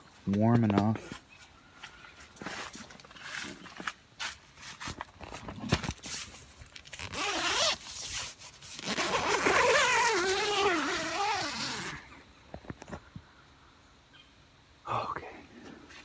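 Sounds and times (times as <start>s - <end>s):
tent zipper being pulled: 6.9s - 12.1s.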